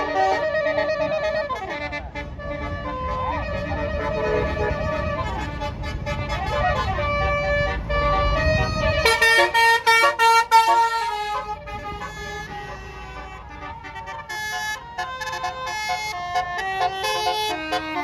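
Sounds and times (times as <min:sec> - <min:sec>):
bus musical air horn melody: 0:00.0 - 0:18.0.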